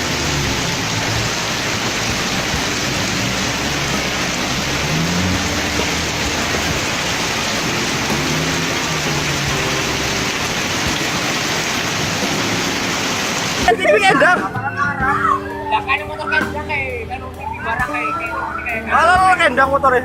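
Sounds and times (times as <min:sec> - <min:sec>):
heavy rain hissing: 0:00.0 - 0:14.3.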